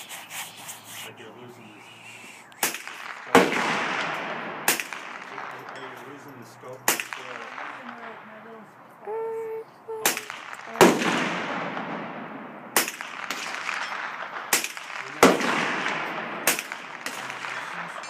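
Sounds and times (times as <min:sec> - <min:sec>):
rifle shots echoing: 0:02.6 - 0:08.7, 0:10.0 - 0:18.0.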